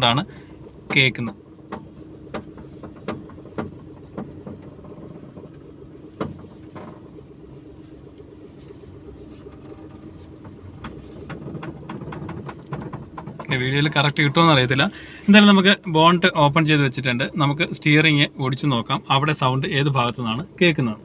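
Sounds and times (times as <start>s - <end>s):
car engine idling: 0.0s - 21.0s
suspension creaking clicks: 0.0s - 21.0s.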